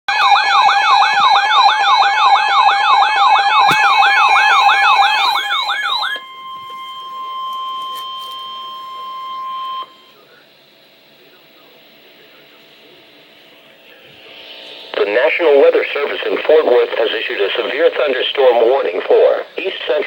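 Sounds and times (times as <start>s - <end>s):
emergency siren sweeping: 0.1s - 10.1s.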